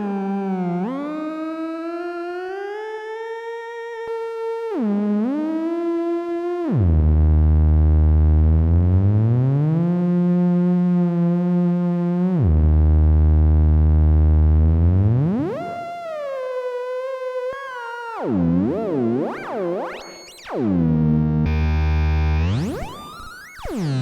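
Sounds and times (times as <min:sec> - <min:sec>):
theremin sliding tone: 0:21.5 - 0:23.1.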